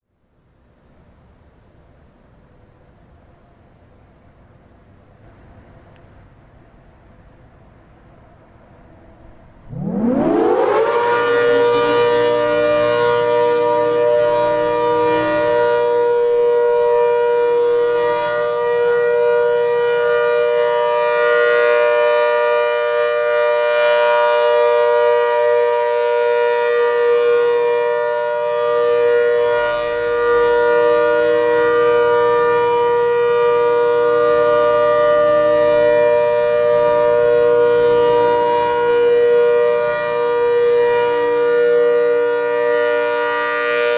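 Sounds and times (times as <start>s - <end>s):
dual-tone civil defense siren: 8.4s - 43.9s.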